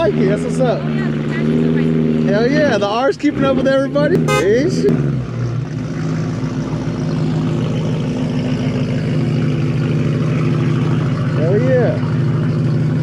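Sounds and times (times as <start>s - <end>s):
car engine running steadily: 0.0s - 13.0s.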